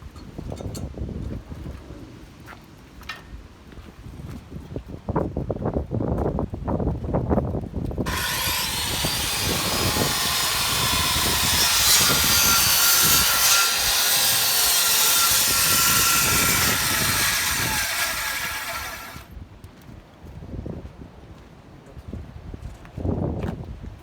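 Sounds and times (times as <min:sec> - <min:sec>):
power tool cutting wood: 0:08.1 - 0:19.3.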